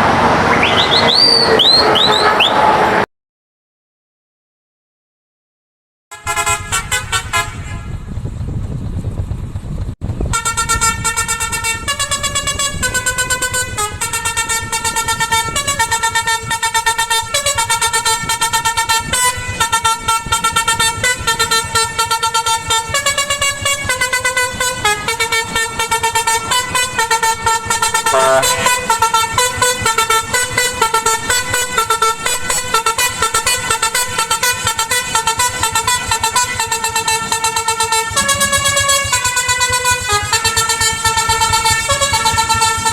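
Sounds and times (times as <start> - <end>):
lorry musical horn tune: 6.1 - 7.6, 10.3 - 31.9.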